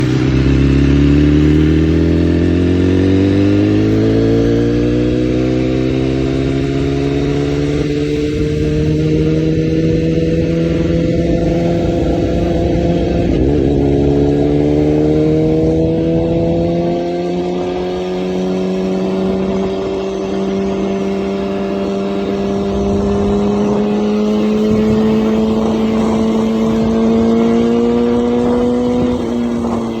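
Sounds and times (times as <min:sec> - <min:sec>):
motorcycle engine revving: 0:00.0 - 0:30.0.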